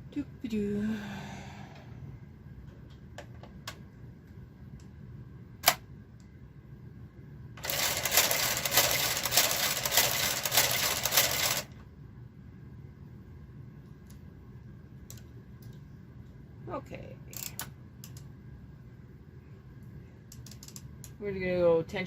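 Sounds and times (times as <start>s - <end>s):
knitting machine clicks: 7.6s - 11.7s.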